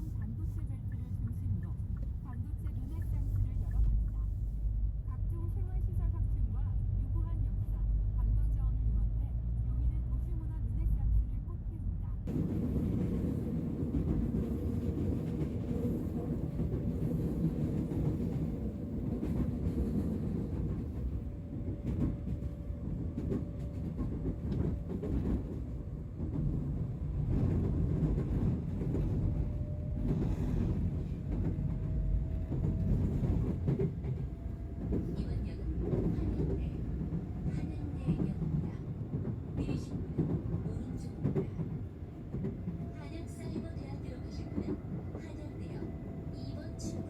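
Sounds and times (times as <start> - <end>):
subway train rumbling: 0.0 - 47.0.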